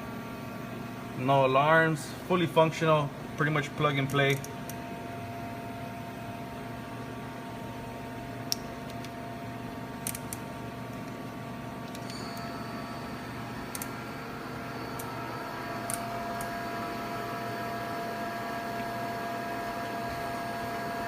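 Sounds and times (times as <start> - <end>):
machining center whine and hum: 0.0 - 21.0
higher whine: 11.8 - 21.0.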